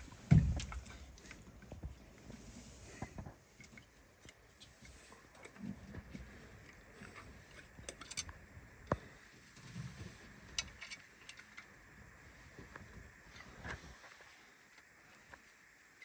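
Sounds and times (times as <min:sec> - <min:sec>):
small metal parts clicking: 0:07.8 - 0:08.3, 0:10.5 - 0:11.7.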